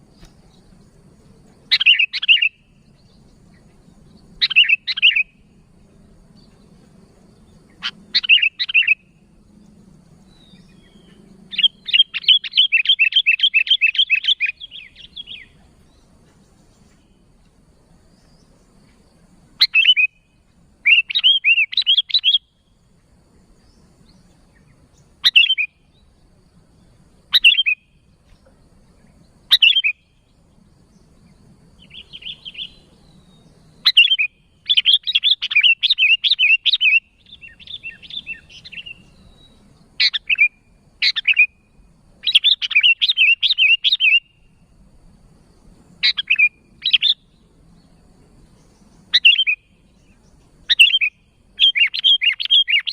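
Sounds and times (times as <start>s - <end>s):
bird calling: 1.6s - 5.4s, 7.7s - 9.2s, 10.3s - 16.1s, 19.6s - 22.5s, 24.5s - 26.1s, 27.3s - 28.4s, 29.5s - 30.2s, 31.8s - 41.6s, 42.2s - 44.5s, 46.0s - 47.4s, 48.6s - 52.9s.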